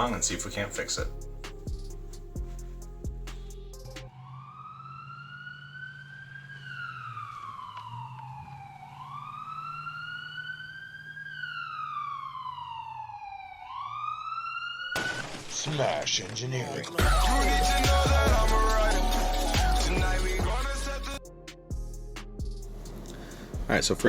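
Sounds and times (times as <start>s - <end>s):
siren wailing: 4.1s - 16.0s.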